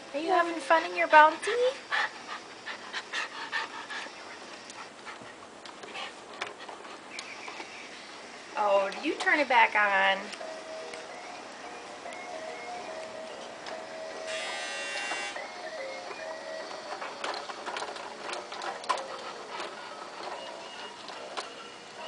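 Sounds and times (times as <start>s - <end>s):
electronic toy tune beeping: 10.4s - 16.9s
plastic toy clicks and rattles: 16.6s - 21.6s.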